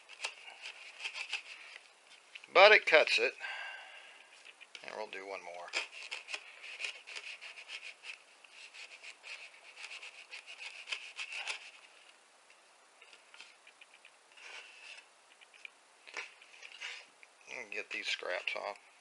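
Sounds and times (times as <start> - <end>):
knife slicing through rope: 0.0 - 1.6, 5.7 - 11.8.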